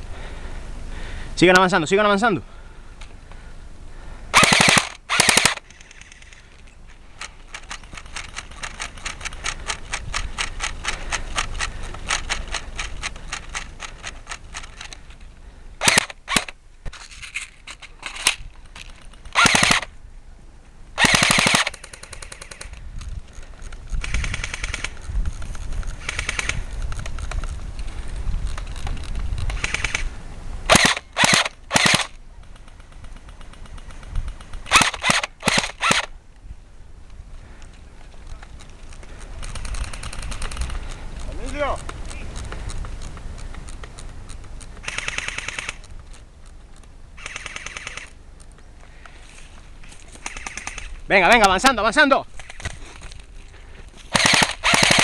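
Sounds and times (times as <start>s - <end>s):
airsoft rifles automatic bursts: 4.3s - 6.5s, 15.8s - 16.6s, 17.3s - 19.9s, 21.0s - 22.8s, 24.0s - 26.8s, 29.5s - 36.1s, 39.0s - 42.3s, 44.0s - 45.9s, 47.2s - 48.2s, 50.1s - 53.0s, 54.0s - 55.0s.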